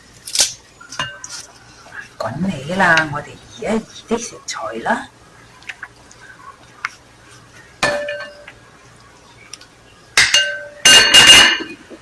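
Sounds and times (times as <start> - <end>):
cookware clinking against pot: 7.8 - 8.6, 10.2 - 12.0.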